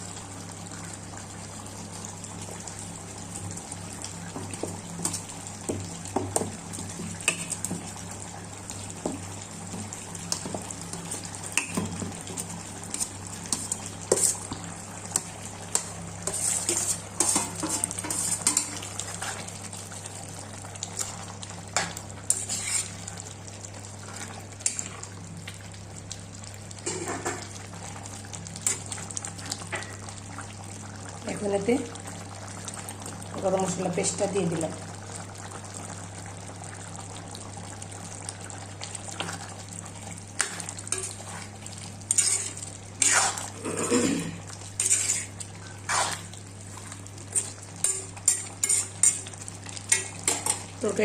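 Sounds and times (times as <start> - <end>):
metal spoon scraping cooking pot: 44.8 - 45.3, 47.8 - 49.2.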